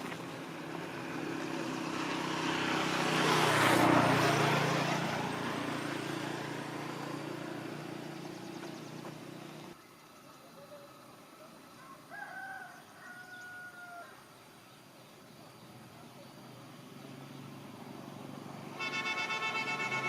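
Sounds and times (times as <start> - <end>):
vehicle engine passing by: 0.0 - 9.8, 15.6 - 20.0.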